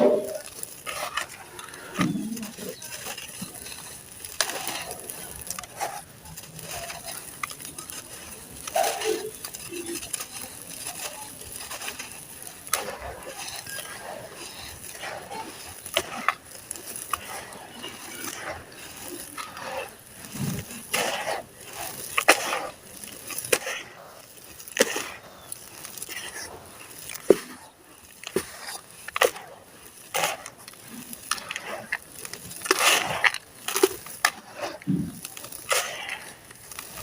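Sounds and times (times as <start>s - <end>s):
slabs crumbling with gritty crunches: 0.0s - 37.0s.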